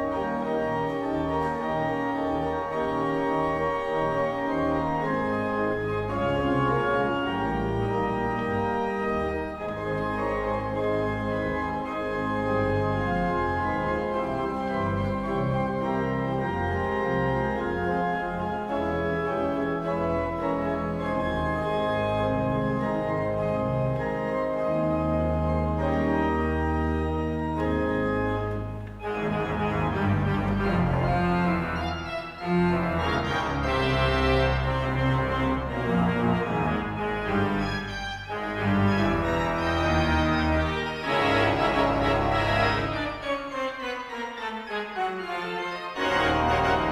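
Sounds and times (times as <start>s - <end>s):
church organ chords: 0.0s - 46.9s.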